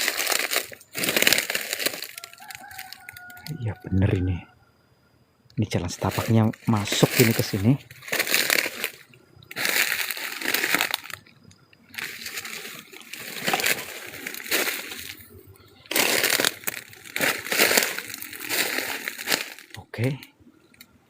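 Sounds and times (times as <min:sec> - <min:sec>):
brushing through undergrowth: 0:00.0 - 0:03.3, 0:05.9 - 0:11.3, 0:11.9 - 0:19.8
footsteps crunching on dry leaves: 0:00.0 - 0:03.4, 0:05.9 - 0:11.3, 0:11.9 - 0:20.2.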